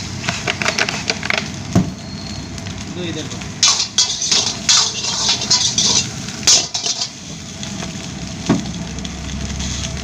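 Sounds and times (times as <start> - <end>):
metal spatula scraping a pan: 3.6 - 7.2.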